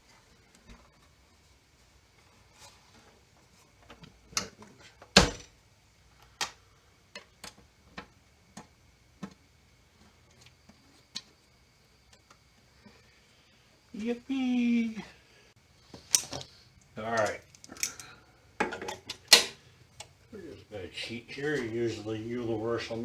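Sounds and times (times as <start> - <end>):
metal parts and tools clinking: 17.2 - 19.6.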